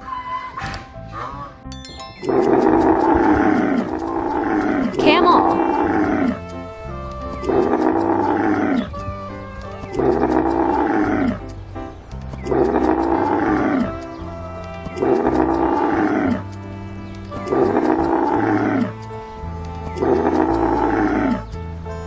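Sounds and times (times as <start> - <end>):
background music: 0.0 - 22.0
large animal roaring: 2.7 - 8.9, 9.9 - 11.5, 12.5 - 21.5.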